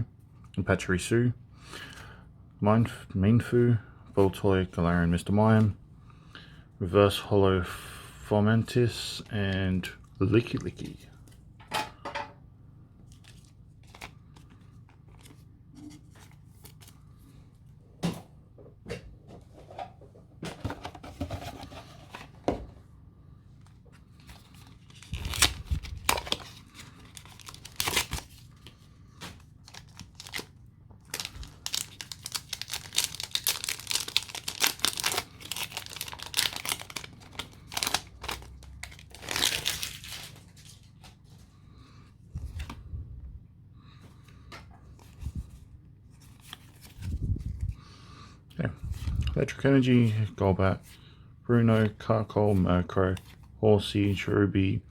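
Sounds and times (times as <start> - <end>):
cards being handled: 13.0 - 17.1, 23.6 - 30.5, 44.8 - 47.8
foil wrapper crinkling: 24.3 - 28.5, 29.6 - 40.9.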